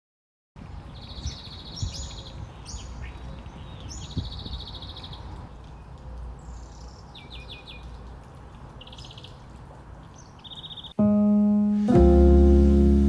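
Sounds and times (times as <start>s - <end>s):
songbirds chirping: 0.6s - 13.0s
piano music: 11.0s - 13.0s.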